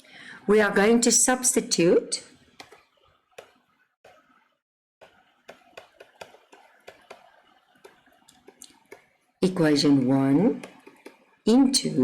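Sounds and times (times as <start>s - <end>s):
pen writing clicks and taps: 2.6s - 4.3s, 5.0s - 9.1s, 10.6s - 11.2s.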